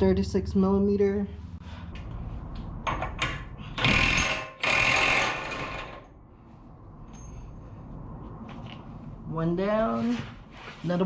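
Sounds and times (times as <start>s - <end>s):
impact wrench hammering: 2.8s - 6.0s.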